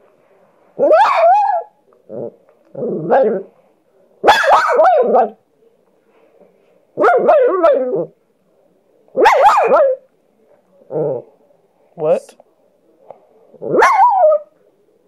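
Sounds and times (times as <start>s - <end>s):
dog barking and grumbling: 0.8s - 3.5s, 4.2s - 5.4s, 7.0s - 8.2s, 10.9s - 11.3s, 13.6s - 14.5s.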